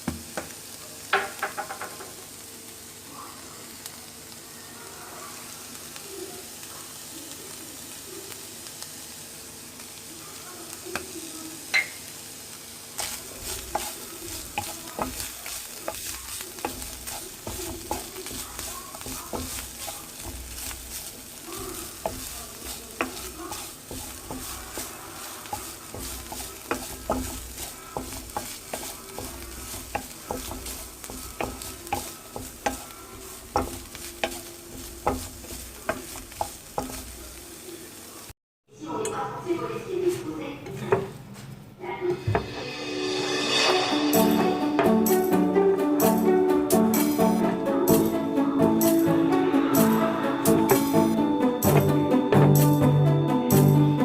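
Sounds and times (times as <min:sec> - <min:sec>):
food sizzling in frying pan: 0:00.0 - 0:38.4, 0:42.2 - 0:54.0
utensil scraping pan: 0:13.0 - 0:37.4.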